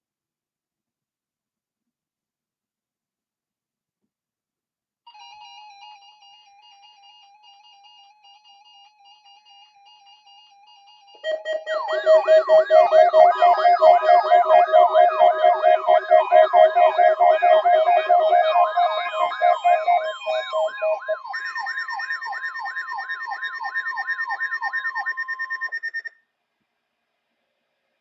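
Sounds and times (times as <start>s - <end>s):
steady held siren tones: 6.2s - 26.1s
electronic siren sweeping: 11.0s - 26.1s.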